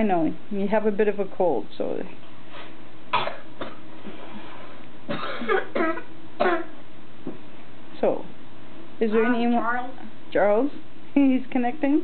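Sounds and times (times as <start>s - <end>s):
person coughing: 3.1s - 3.8s, 5.1s - 6.8s.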